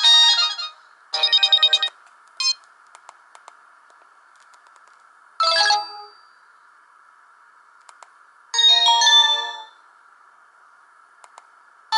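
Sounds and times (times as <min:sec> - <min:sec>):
faint steady hiss: 0:00.8 - 0:11.9
phone ringtone jingles: 0:01.2 - 0:02.6.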